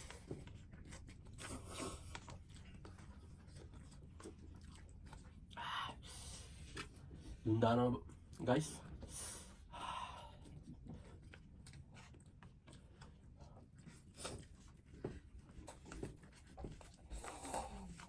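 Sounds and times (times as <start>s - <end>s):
people chewing food: 0.0s - 18.0s.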